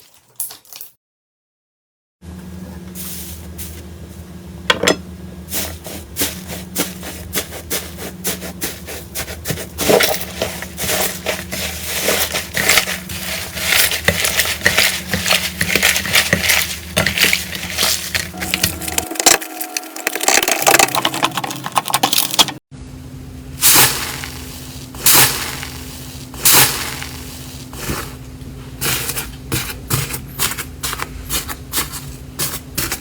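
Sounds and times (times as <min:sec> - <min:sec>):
steady low hum: 0:02.2 - 0:33.0.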